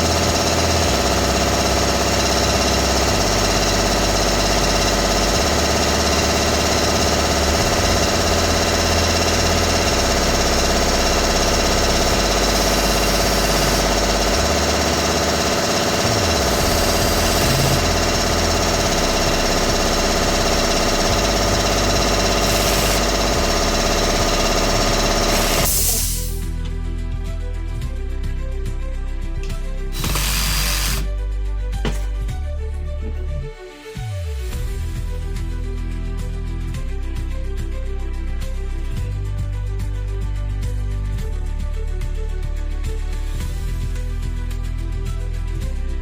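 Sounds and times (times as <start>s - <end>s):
hammer drill running: 0.0s - 26.6s, 30.0s - 31.1s, 31.8s - 33.2s.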